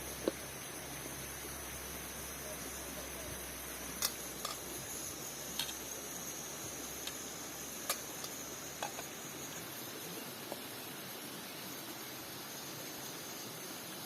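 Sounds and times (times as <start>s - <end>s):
steady high-pitched hiss: 0.0s - 14.0s.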